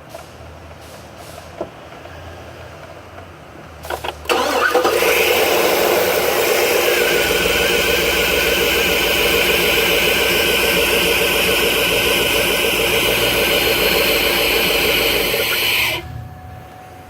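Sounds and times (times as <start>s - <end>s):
car engine cranking and running: 3.8s - 16.2s.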